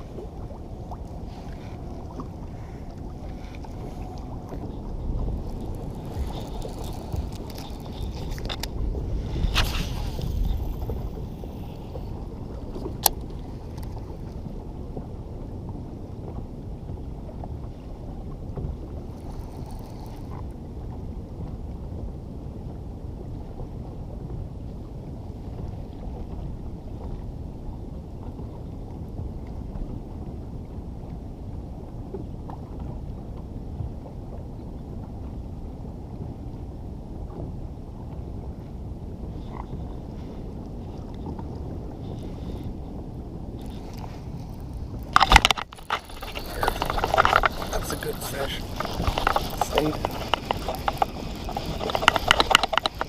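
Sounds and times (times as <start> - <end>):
river water around kayak: 0.0 - 53.0
wind on microphone: 0.0 - 53.0
faint small ticks: 12.7 - 14.4, 19.1 - 20.5, 43.6 - 53.0.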